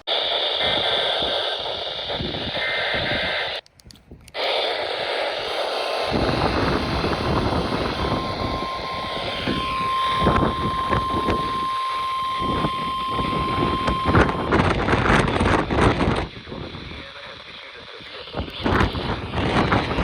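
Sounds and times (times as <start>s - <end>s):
crackling static bursts: 0.0s - 3.6s, 4.4s - 20.0s
radio static: 0.0s - 3.6s, 4.4s - 20.0s
steady alert tone: 5.1s - 14.5s.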